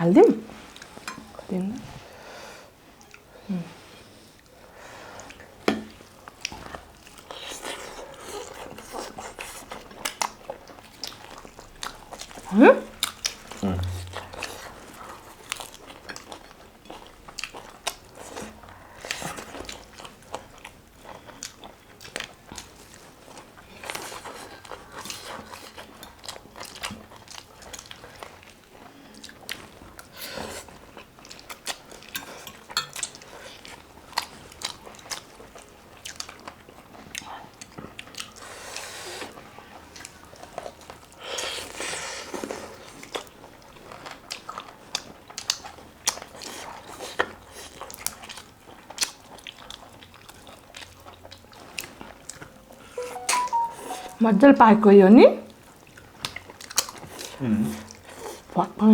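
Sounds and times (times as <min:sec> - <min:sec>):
crunchy crackles of eating: 0:04.4 - 0:53.0, 0:55.5 - 0:58.9
person chewing and biting: 0:13.0 - 0:18.4.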